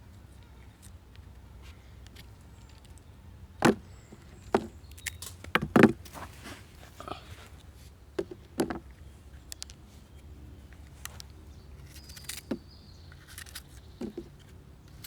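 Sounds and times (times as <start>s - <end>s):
sharp wooden knocks and cracks: 3.6s - 6.2s.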